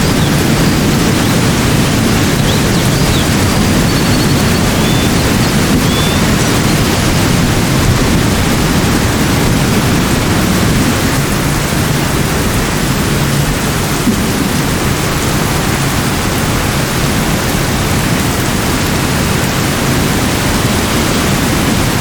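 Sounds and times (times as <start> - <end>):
faint high bird chirps: 0.0 - 7.1.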